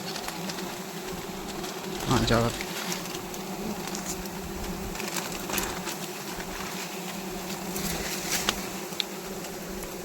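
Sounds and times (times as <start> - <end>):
bees buzzing: 0.0 - 10.0.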